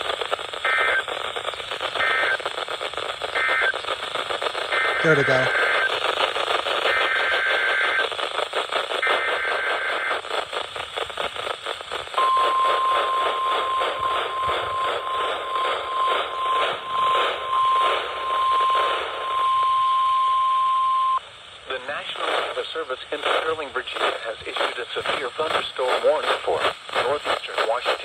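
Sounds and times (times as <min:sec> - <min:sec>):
radio static hiss: 0:00.0 - 0:28.0
digital header bursts: 0:04.7 - 0:06.0
steady warning alarm tone: 0:12.2 - 0:21.2.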